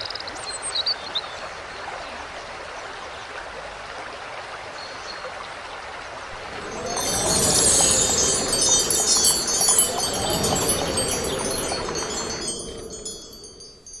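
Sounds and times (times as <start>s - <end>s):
chimes tinkling: 6.4s - 14.0s.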